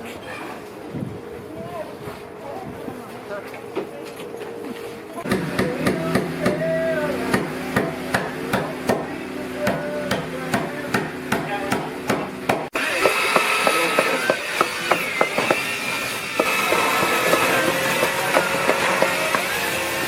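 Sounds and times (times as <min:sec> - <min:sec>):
hammer blows: 0:05.3 - 0:20.0.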